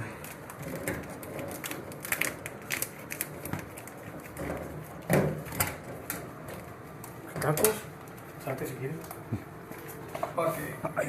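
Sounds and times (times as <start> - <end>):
hardware clicking and clattering: 0.2 - 8.3.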